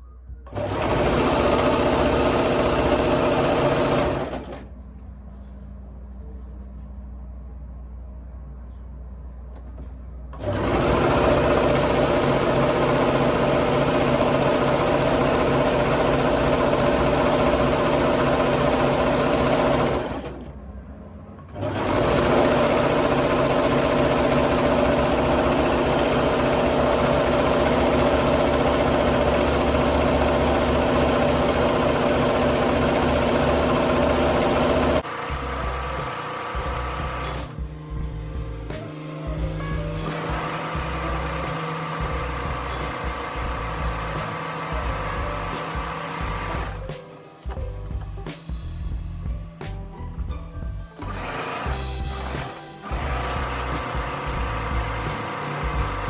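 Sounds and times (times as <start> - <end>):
sewing machine running: 0.5 - 4.7, 10.4 - 20.5, 21.6 - 47.0, 51.0 - 56.0
low hum: 4.7 - 10.4, 36.6 - 44.2.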